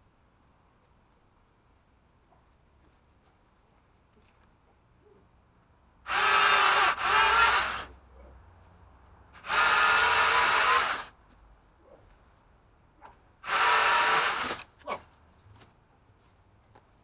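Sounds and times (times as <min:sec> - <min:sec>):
pole saw motor whining: 0:06.1 - 0:07.9, 0:09.4 - 0:11.1, 0:13.4 - 0:14.6.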